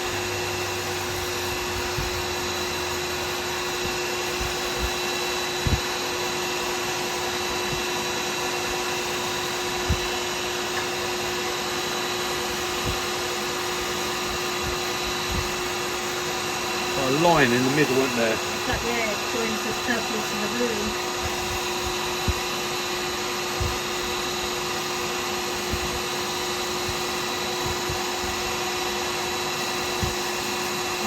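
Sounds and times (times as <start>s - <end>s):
wood lathe motor humming: 0.0s - 31.0s.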